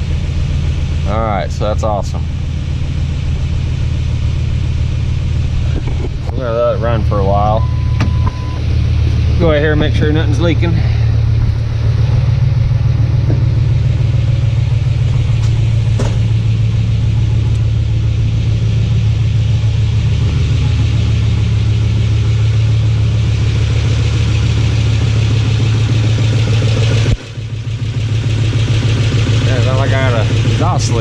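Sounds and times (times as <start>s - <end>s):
car engine idling: 0.0s - 31.0s
exhaust leak ticking: 0.0s - 31.0s.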